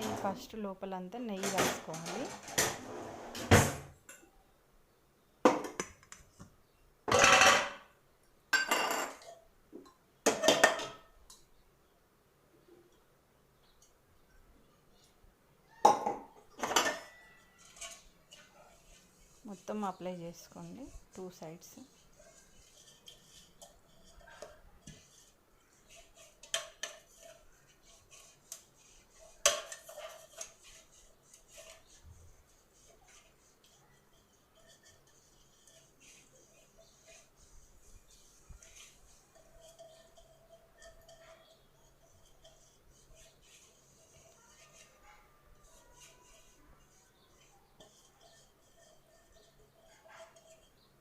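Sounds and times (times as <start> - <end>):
metal bowl clinks and scrapes: 1.4 - 2.9, 7.1 - 7.9, 8.6 - 9.5, 10.2 - 11.5, 15.7 - 51.0
spoon clattering in steel bowl: 8.6 - 9.4, 38.6 - 43.6.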